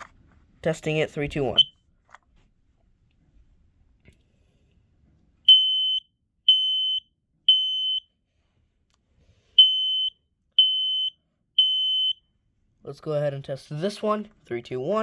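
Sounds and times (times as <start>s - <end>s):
smoke alarm beeping: 5.5s - 8.0s, 9.6s - 12.2s.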